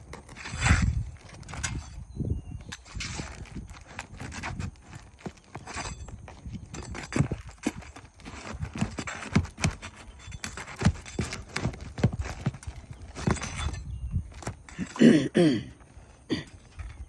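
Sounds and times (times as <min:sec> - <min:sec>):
scraping on roof: 0:00.0 - 0:02.0, 0:02.7 - 0:15.2
knocks and taps on shingle roof: 0:07.0 - 0:13.4.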